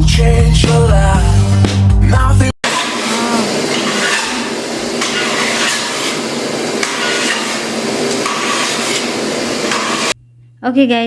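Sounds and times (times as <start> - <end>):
steady noisy background: 2.6 - 10.2.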